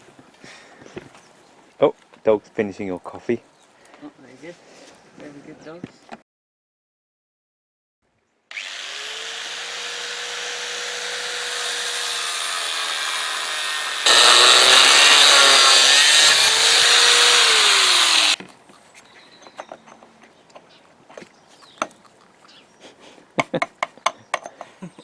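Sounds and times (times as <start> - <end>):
angle grinder cutting steel: 8.5 - 18.4.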